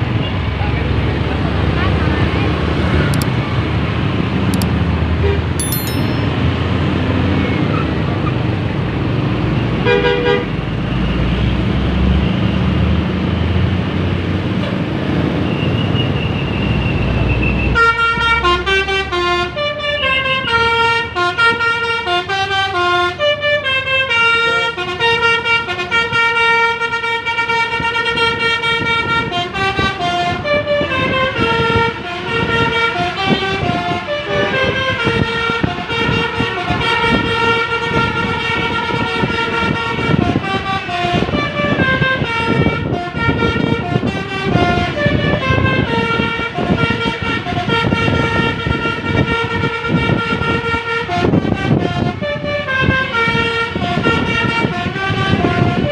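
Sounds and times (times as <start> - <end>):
bus engine and traffic rumble: 0.0 - 55.9
multi-tone bus horn melody: 5.1 - 7.4, 9.6 - 11.6, 17.2 - 55.9.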